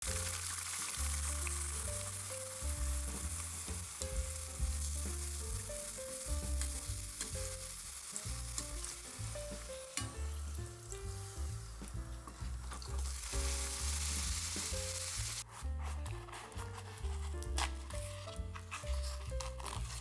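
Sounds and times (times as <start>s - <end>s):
dough frying in oil: 0.0s - 15.5s
soft background music: 0.0s - 20.0s.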